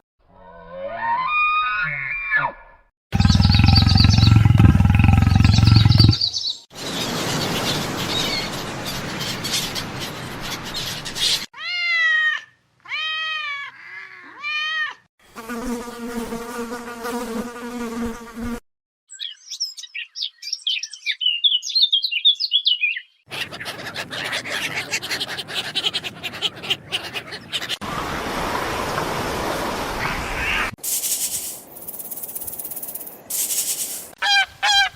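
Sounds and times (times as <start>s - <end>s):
rising and falling animal calls: 0.3s - 6.4s, 23.3s - 27.9s
noisy animal calls: 23.3s - 27.8s.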